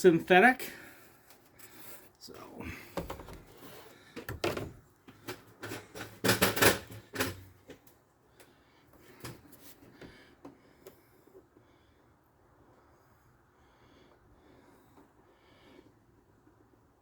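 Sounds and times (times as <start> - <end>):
plastic bottles knocking and rattling: 2.8 - 7.8.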